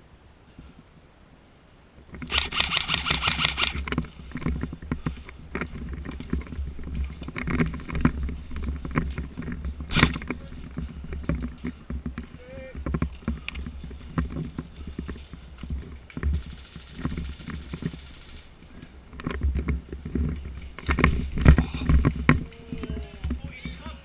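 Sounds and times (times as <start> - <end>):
clicks and knocks of movement: 2.1 - 24.0
airsoft gun full-auto burst: 2.2 - 3.8.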